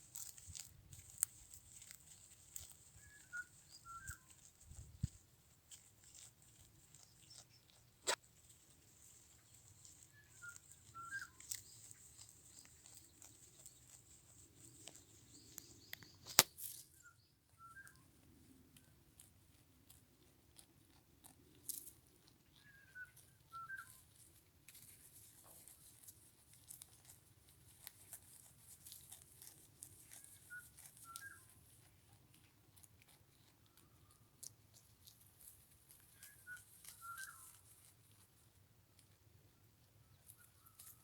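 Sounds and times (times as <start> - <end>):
goat chewing grass: 0.0 - 41.0.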